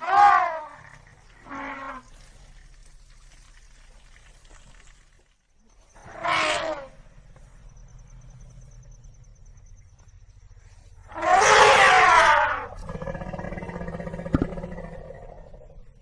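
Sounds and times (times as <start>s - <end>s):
elephant trumpeting: 0.0s - 2.1s, 6.0s - 7.2s, 11.0s - 15.7s
low background rumble: 0.8s - 11.4s.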